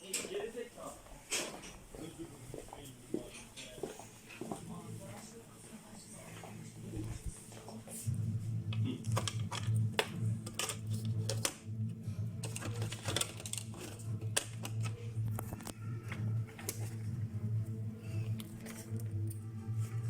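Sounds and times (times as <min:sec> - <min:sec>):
steady low hum: 0:06.6 - 0:20.0.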